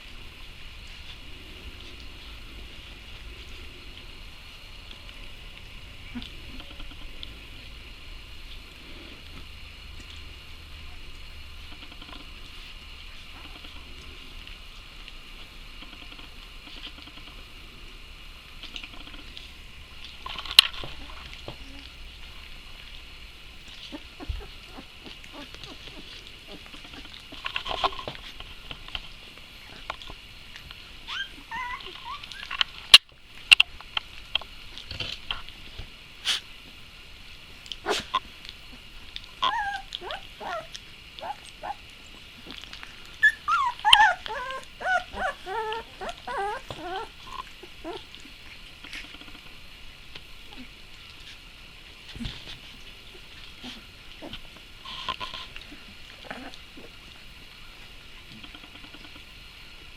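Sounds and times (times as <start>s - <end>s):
small clicks and scratches: 23.6s - 30.8s, 52.1s - 56.6s, 58.3s - 59.3s
pets scuffling and pattering: 23.6s - 33.0s, 50.2s - 57.1s
dog whining and yipping: 31.1s - 32.6s, 39.4s - 41.8s, 43.2s - 48.1s.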